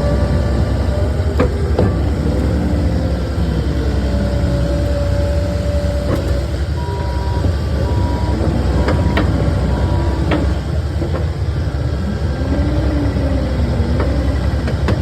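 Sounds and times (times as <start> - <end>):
diesel engine running: 0.0 - 15.0
backup alarm beeping: 6.7 - 10.3.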